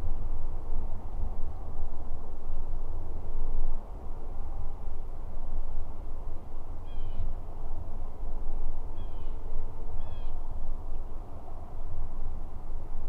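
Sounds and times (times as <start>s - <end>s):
steady low rumble: 0.0s - 13.0s
bird calls: 9.0s - 9.4s, 10.0s - 10.4s.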